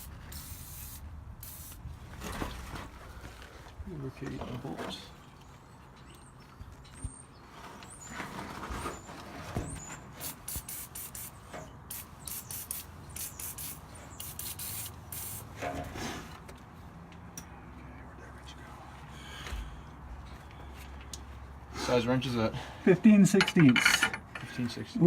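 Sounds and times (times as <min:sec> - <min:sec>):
aerosol spray hissing: 0:00.0 - 0:01.8, 0:10.2 - 0:11.3, 0:11.9 - 0:15.5.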